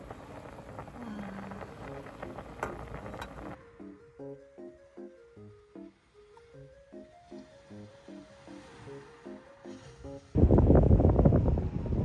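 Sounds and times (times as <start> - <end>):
noisy ambient layer: 0.0 - 12.0
plucked notes music: 1.9 - 10.3.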